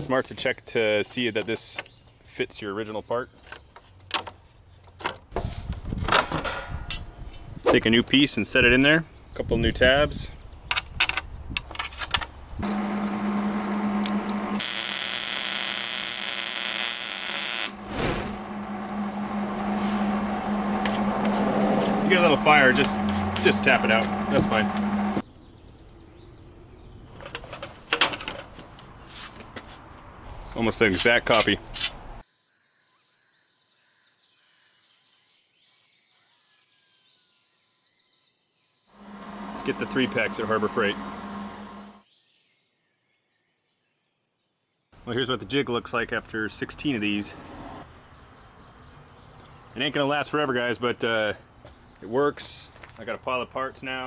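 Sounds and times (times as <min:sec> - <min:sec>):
welder electric hum: 0:12.6 - 0:25.2, 0:39.0 - 0:42.0
welding arc crackling and hissing: 0:12.8 - 0:23.0.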